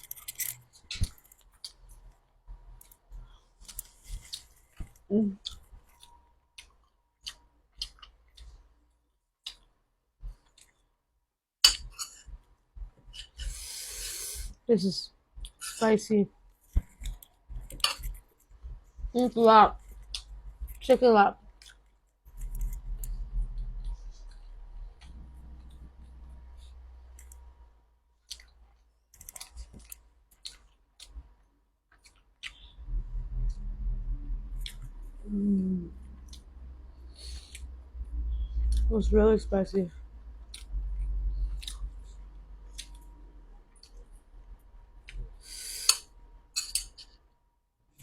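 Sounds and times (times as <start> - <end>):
chewing clicks and smacks: 5.4 - 8.6, 9.4 - 10.9, 21.5 - 25.9, 28.2 - 31.3, 31.9 - 32.8, 40.4 - 44.2
wet mouth clicks while chewing: 5.4 - 8.6, 32.0 - 32.8, 37.2 - 37.8, 40.5 - 43.1
faint low hum: 14.4 - 48.0.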